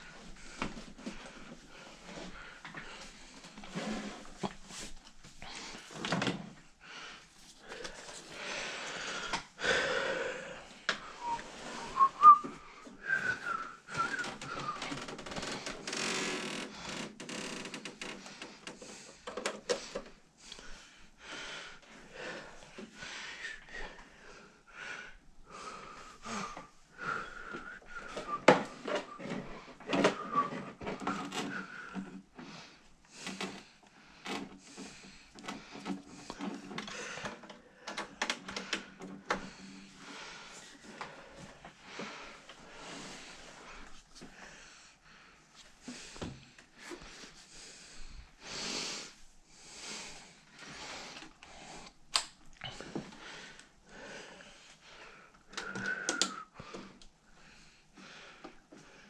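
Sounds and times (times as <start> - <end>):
wavering whistled notes: 11.1 - 14.8.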